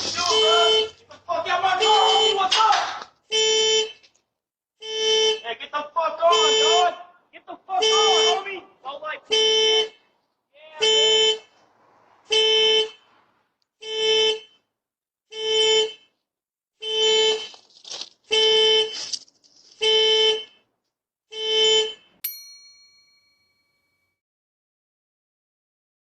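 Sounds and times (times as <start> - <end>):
car horn blasts: 0.0 - 4.1, 4.8 - 14.7, 15.3 - 16.1, 16.8 - 17.6, 18.3 - 19.0, 19.8 - 20.6, 21.3 - 22.2
high ringing tones: 22.2 - 24.1.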